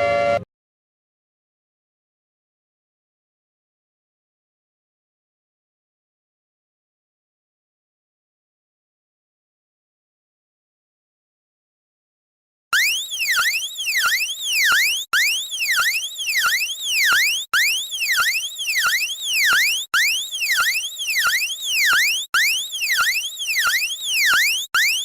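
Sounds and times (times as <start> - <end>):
electronic alarm siren sweeping: 12.8 - 25.0.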